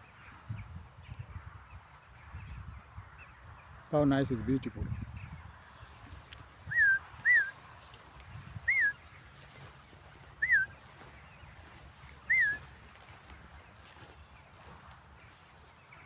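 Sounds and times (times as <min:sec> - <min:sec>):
bird whistled calls: 0:06.7 - 0:07.6, 0:08.6 - 0:09.1, 0:10.2 - 0:10.8, 0:12.2 - 0:12.7.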